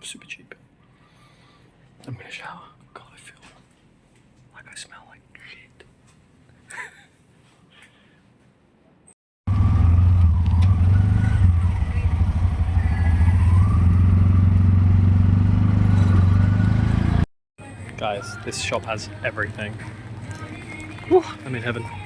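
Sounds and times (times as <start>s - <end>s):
vehicle engine running: 9.5s - 17.2s.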